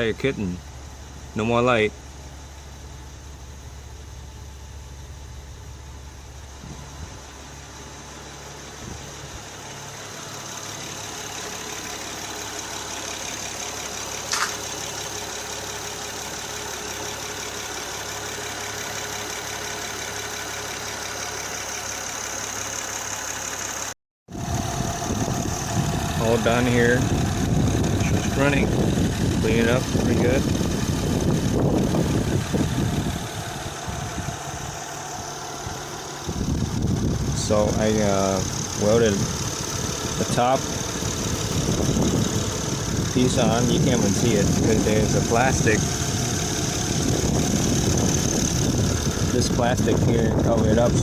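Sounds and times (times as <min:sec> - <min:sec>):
car engine idling: 0:00.0 - 0:51.0
short sharp click: 0:14.3 - 0:14.6.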